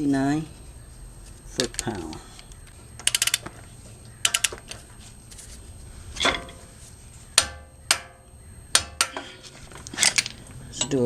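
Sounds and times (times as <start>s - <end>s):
ratchet wrench clicking: 3.0s - 3.4s, 4.2s - 4.8s
sharp metallic clicks and clinks: 3.0s - 3.5s, 4.2s - 4.8s.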